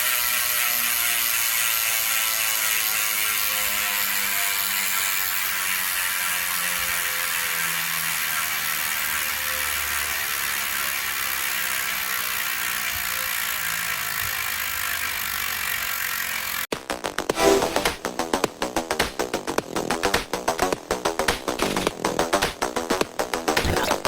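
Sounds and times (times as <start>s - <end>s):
bicycle freehub ratchet buzz: 0.0s - 16.7s.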